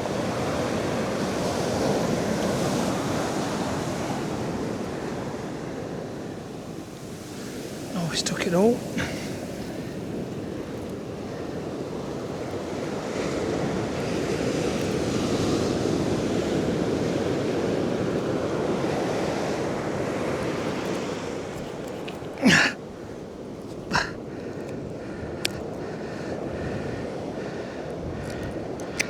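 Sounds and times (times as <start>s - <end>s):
waves washing on shore: 0.0s - 29.0s.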